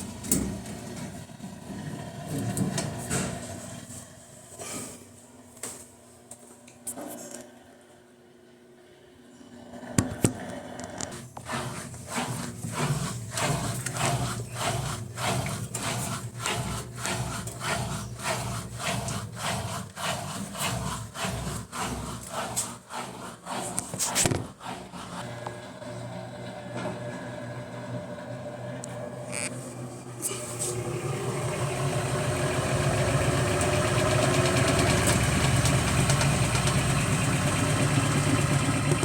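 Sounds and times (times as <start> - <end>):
washing machine motor hum: 0.0 - 4.5, 9.6 - 39.0
rhythmic rubbing scrape: 11.4 - 25.2.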